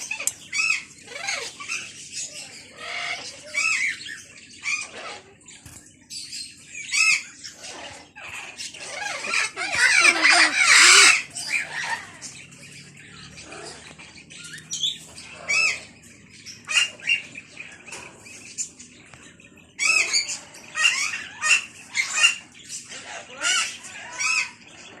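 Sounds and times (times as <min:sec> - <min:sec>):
macaws squawking: 0:06.9 - 0:12.4, 0:13.1 - 0:16.0, 0:19.8 - 0:25.0.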